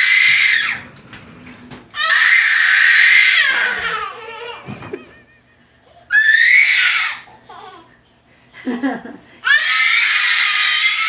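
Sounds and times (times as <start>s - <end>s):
child screeching: 2.0s - 4.3s, 6.1s - 7.3s, 9.4s - 11.0s.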